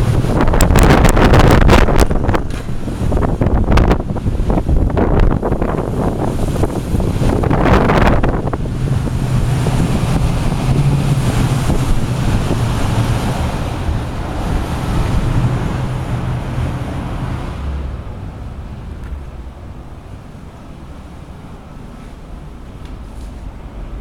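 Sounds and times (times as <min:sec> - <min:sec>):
gusty wind buffeting microphone: 0:00.0 - 0:24.0.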